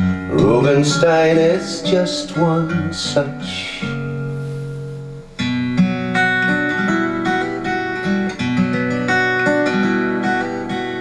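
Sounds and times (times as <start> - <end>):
person singing: 0.0 - 4.0
fingerpicked acoustic guitar: 0.0 - 11.0.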